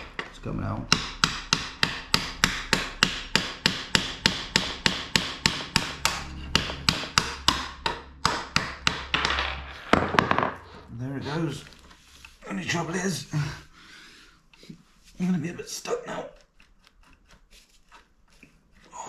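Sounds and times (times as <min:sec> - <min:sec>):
hammer tapping on metal pin: 0:00.9 - 0:09.4.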